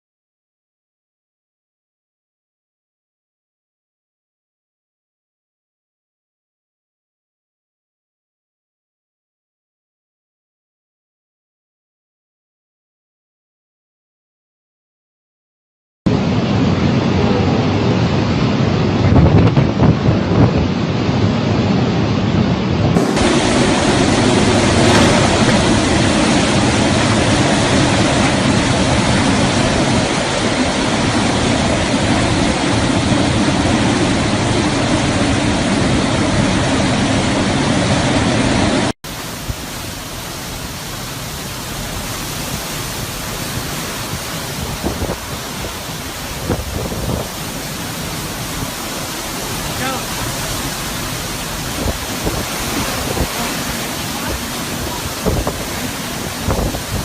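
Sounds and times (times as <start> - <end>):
hurricane wind and rain: 16.1 - 57.0.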